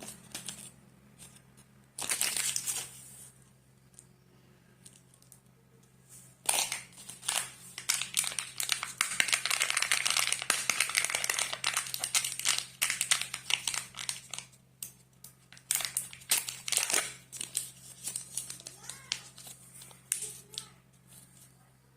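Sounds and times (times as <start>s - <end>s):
wrapper crinkling and tearing: 2.0s - 3.0s, 6.4s - 14.6s, 15.5s - 20.7s.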